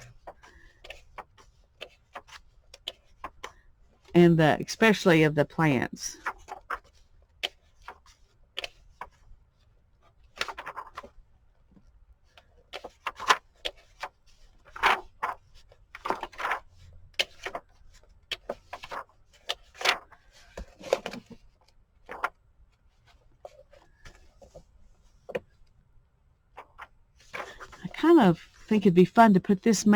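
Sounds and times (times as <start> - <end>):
book pages rustling: 0.0 - 4.1, 6.2 - 25.7.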